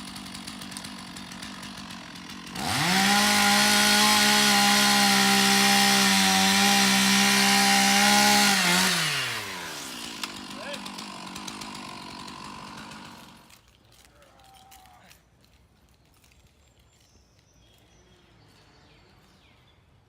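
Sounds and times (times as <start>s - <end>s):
chainsaw cutting wood: 0.0s - 14.7s.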